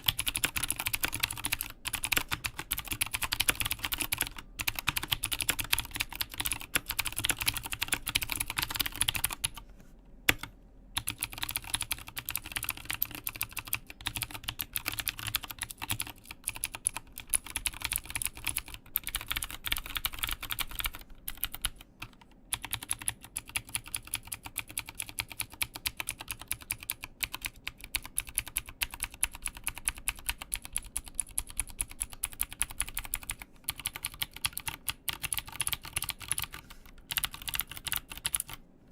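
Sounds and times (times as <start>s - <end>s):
mechanical keyboard typing: 0.0s - 9.6s, 10.3s - 38.6s.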